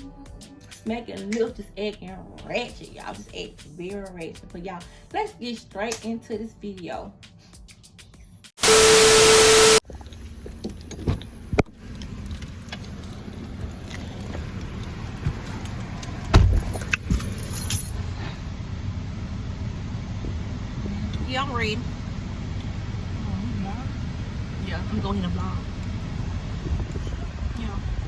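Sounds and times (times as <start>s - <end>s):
static burst with steady tone: 8.6s - 9.8s
car interior rumble: 9.9s - 28.0s
thump: 16.3s - 17.2s.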